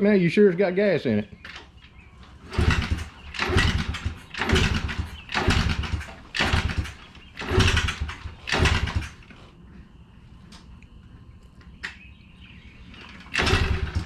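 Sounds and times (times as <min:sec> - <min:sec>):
motorbike engine kick-started: 0:02.4 - 0:09.4, 0:12.9 - 0:14.0.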